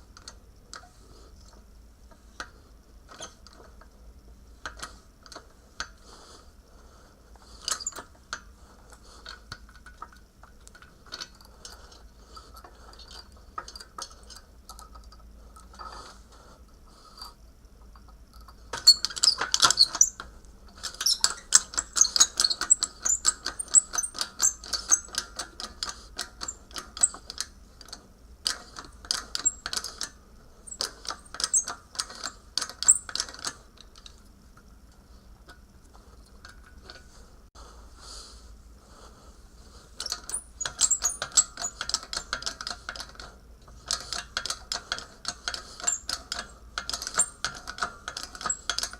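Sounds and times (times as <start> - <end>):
rapid clicking and rattling: 40.0 - 48.9.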